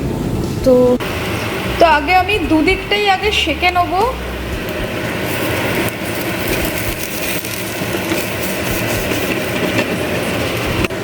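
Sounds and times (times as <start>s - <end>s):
food sizzling in a pan: 1.0s - 11.0s.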